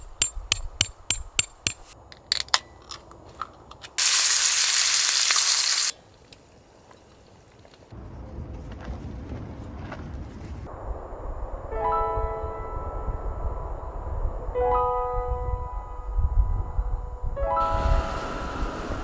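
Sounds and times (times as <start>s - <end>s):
food sizzling in a hot pan: 4.0s - 5.9s.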